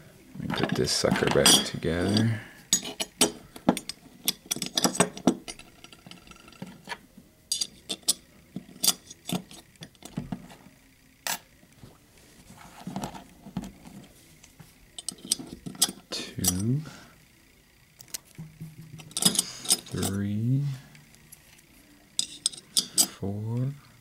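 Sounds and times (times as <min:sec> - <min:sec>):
metal lock parts clicking: 0:00.5 - 0:10.2, 0:15.0 - 0:16.7, 0:19.0 - 0:20.2, 0:22.2 - 0:23.2.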